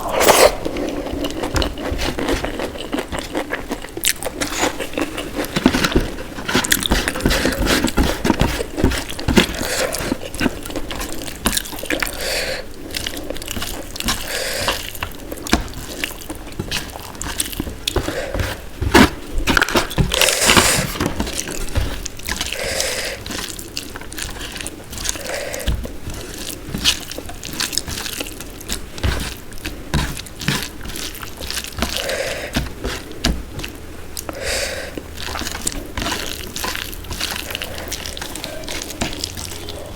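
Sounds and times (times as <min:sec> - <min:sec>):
wet chewing and lip smacking: 0:00.0 - 0:05.5, 0:21.3 - 0:39.9.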